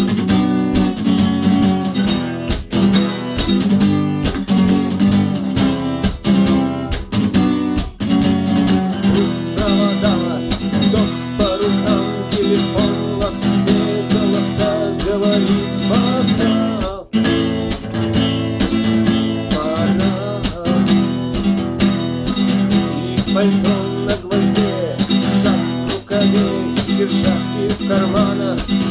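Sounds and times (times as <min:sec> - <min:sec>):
guitar strumming chords: 0:00.0 - 0:28.9.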